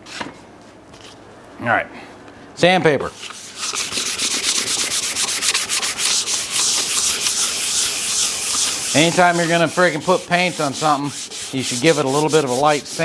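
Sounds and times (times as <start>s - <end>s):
sandpaper rubbing on wood: 3.2s - 13.0s.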